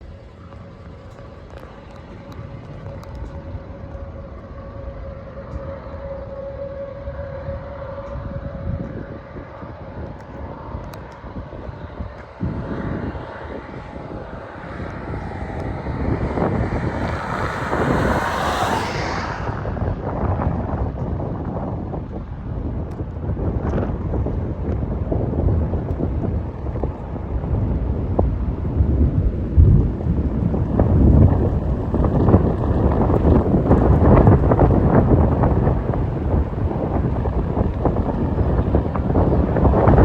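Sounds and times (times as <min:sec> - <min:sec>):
storm wind buffeting microphone: 0:00.0 - 0:40.0.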